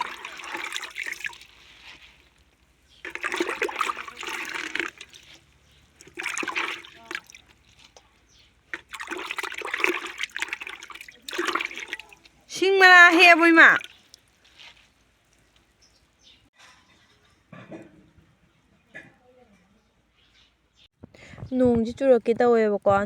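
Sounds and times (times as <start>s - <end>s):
water splashing and pouring: 0.0s - 16.2s.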